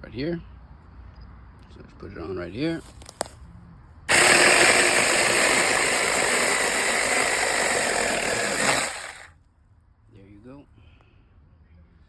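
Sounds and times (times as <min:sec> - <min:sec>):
mini chainsaw cutting a branch: 0:04.1 - 0:09.3.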